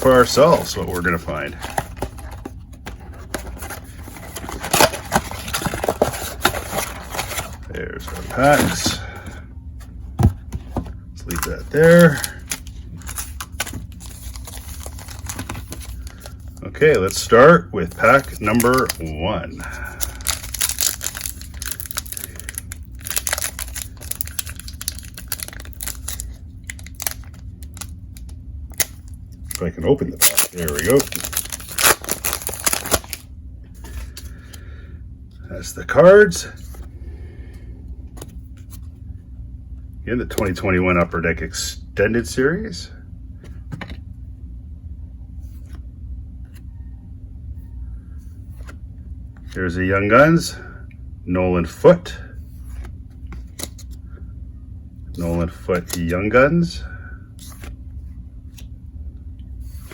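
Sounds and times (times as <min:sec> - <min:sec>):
trading cards clicking and rustling: 0:00.0 - 0:09.4, 0:10.2 - 0:33.2
low room hum: 0:00.0 - 0:59.9
wrapper crinkling and tearing: 0:11.2 - 0:17.3, 0:17.9 - 0:33.2.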